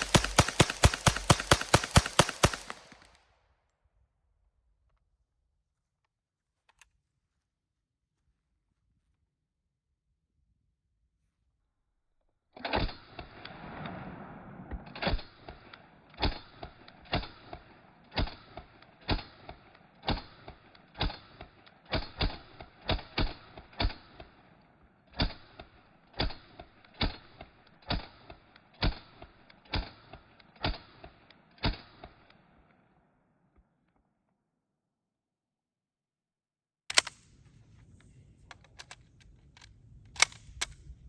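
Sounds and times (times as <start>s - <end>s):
submachine gun single shots: 0.0s - 3.1s, 36.9s - 41.0s.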